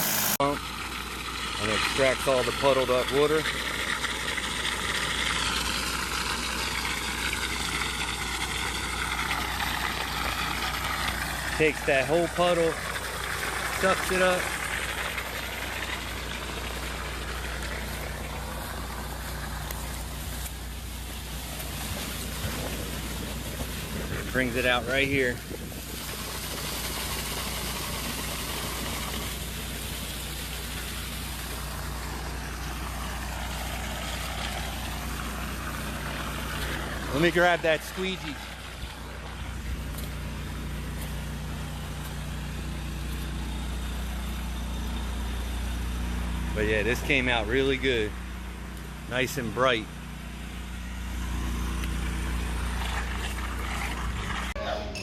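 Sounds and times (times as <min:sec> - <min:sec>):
rushing hiss of water: 0:00.0 - 0:00.4, 0:03.1 - 0:24.5, 0:25.5 - 0:39.6
small gas engine running: 0:00.0 - 0:55.0.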